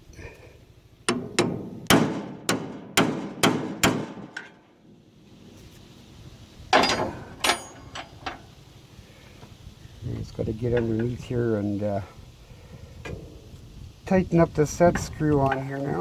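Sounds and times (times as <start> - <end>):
hammer striking metal: 1.1 - 4.6, 6.7 - 8.4.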